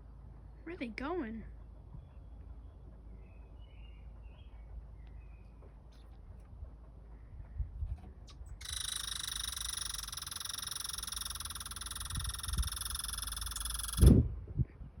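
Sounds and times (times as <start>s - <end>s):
animal buzzing call: 8.6s - 14.2s.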